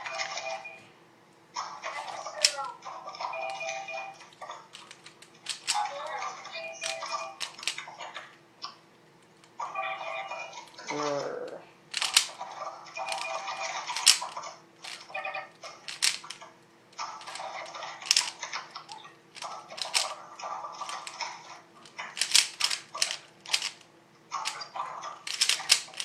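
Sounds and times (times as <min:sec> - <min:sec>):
puzzle cube clacking: 0:01.8 - 0:08.8, 0:09.4 - 0:26.0.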